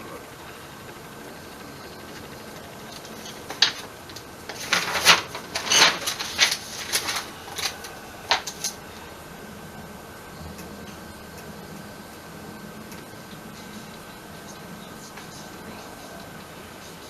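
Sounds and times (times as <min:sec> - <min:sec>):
faint steady hiss: 0:00.0 - 0:17.0
sharp clicks and rattles: 0:00.2 - 0:08.9.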